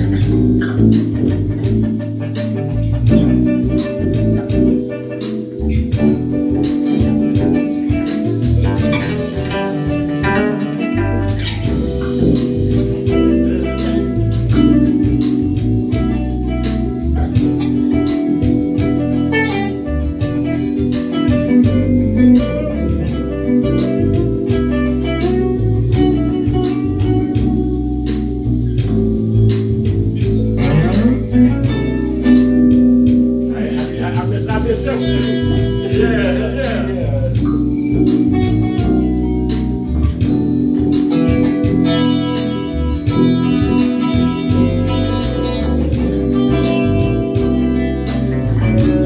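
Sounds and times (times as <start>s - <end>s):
bass guitar line: 0.0s - 49.0s
held chords: 0.0s - 49.0s
plucked guitar notes: 0.0s - 49.0s.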